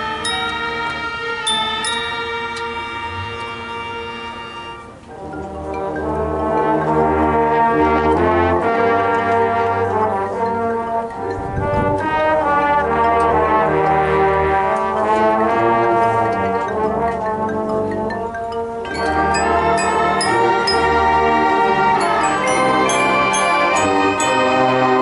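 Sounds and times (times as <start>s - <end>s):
marching band brass chords: 0.0s - 18.0s, 18.8s - 25.0s.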